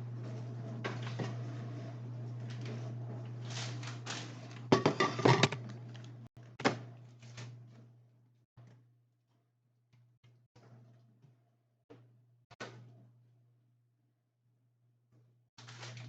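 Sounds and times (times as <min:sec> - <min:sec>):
refrigerator hum: 0:00.0 - 0:08.8
items clattering in refrigerator: 0:00.4 - 0:01.8, 0:02.4 - 0:07.8.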